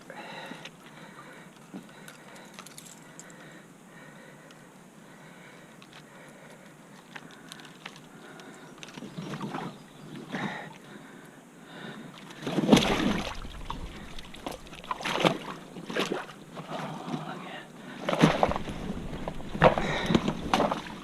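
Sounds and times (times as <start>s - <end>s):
water sloshing and splashing: 8.8s - 10.5s, 12.1s - 21.0s.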